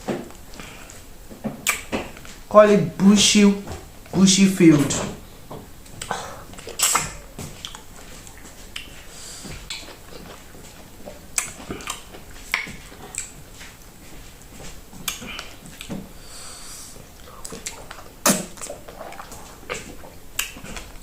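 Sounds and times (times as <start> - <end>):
wet chewing and lip smacks: 1.6 - 2.4, 5.8 - 16.0, 17.0 - 21.0.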